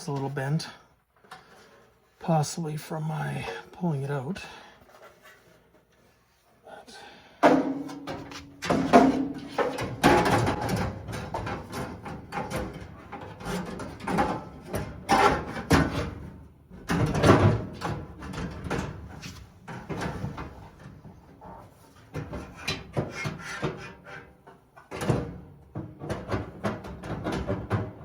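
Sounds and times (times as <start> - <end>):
sheet metal clanking and scraping: 7.4 - 16.2.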